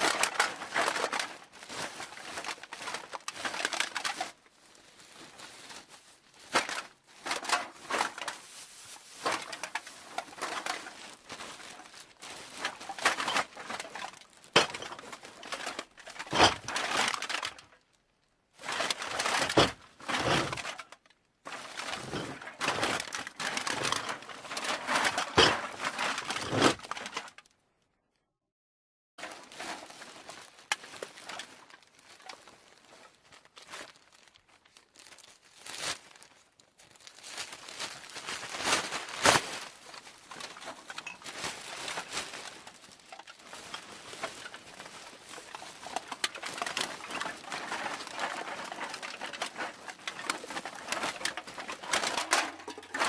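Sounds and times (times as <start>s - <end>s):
aluminium cans clattering: 0.0s - 4.4s, 9.2s - 11.1s, 12.5s - 17.7s, 18.6s - 27.3s, 42.9s - 53.0s.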